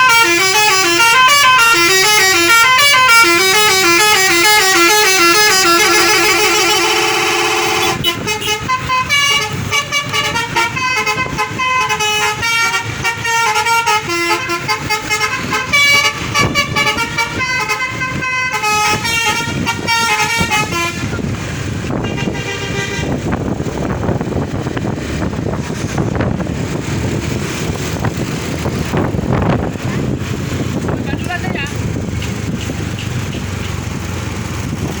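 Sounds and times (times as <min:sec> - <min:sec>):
musical bus horn tune: 0:00.0 - 0:23.5
vehicle noise: 0:00.0 - 0:35.0.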